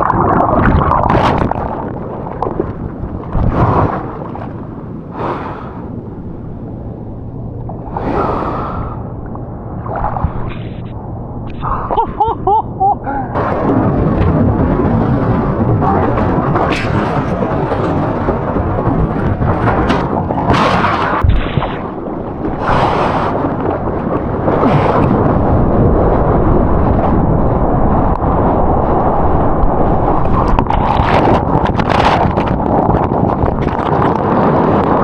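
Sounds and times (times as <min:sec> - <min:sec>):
waves crashing: 0:00.0 - 0:06.5, 0:13.3 - 0:25.4.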